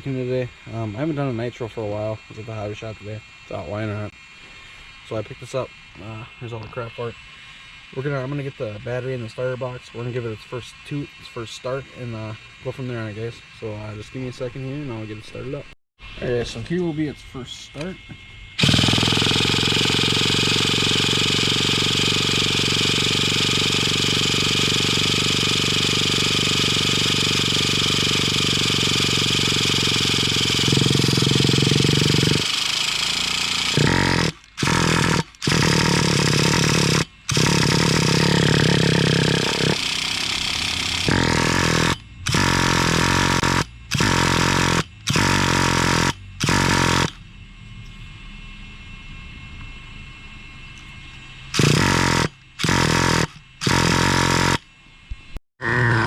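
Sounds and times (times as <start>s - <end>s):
starter box cranking engine: 18.6s - 47.2s, 51.5s - 54.6s.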